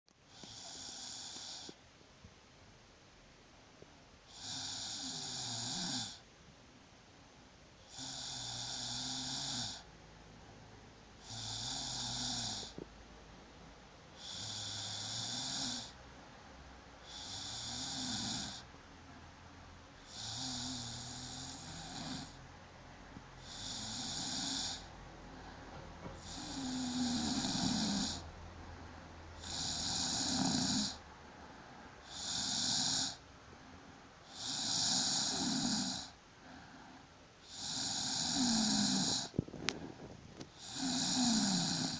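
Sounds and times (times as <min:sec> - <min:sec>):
quiet breathing: 0:00.1 - 0:01.9, 0:07.2 - 0:41.9
person snoring: 0:00.3 - 0:01.8, 0:04.3 - 0:06.2, 0:07.8 - 0:09.9, 0:11.2 - 0:12.9, 0:14.2 - 0:16.0, 0:17.0 - 0:18.7, 0:20.0 - 0:22.4, 0:23.4 - 0:28.3, 0:29.4 - 0:31.0, 0:32.0 - 0:33.2, 0:34.2 - 0:41.9.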